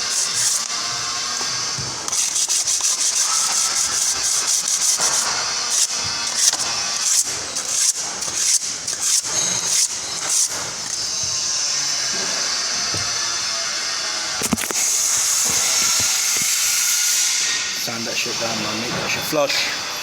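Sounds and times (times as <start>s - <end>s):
sanding strokes: 0.0s - 13.2s.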